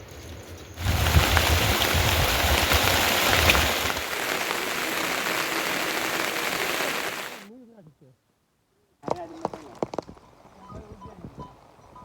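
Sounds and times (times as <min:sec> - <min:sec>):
heavy rain falling: 0:00.8 - 0:07.5
low rumbling: 0:00.8 - 0:07.5.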